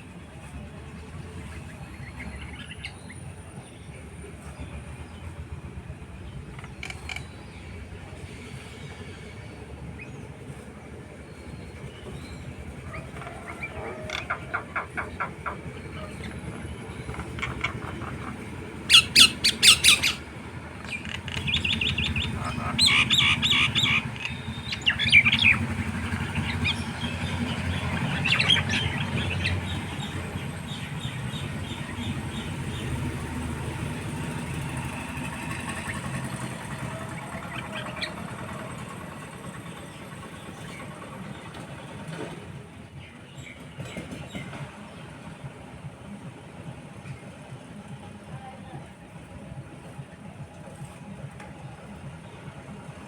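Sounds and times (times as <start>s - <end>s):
low engine rumble: 0.0s - 53.0s
birds calling harshly: 11.2s - 41.4s.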